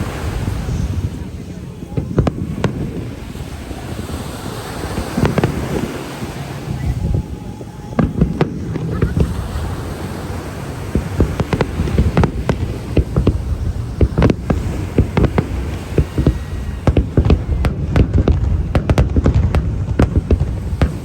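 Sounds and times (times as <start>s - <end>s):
continuous low rumble: 0.0s - 21.0s
fireworks bursting with sharp bangs: 0.0s - 21.0s.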